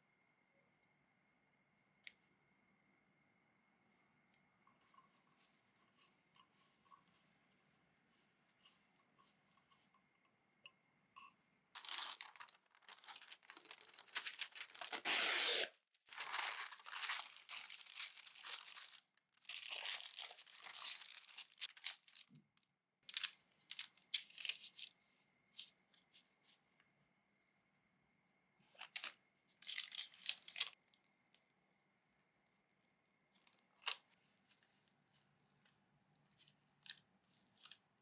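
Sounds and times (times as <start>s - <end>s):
paper or plastic crinkling and tearing: 11.8s - 22.3s, 28.8s - 30.8s.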